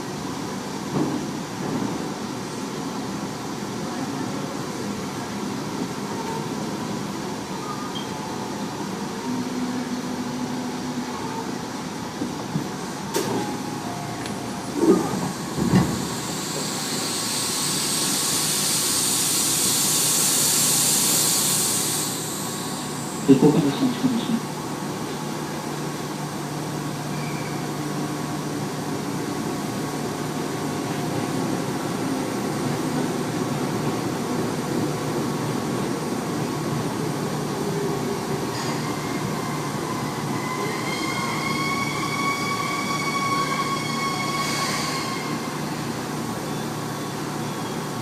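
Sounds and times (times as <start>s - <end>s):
train wheels and motors rumbling: 10.0s - 48.0s.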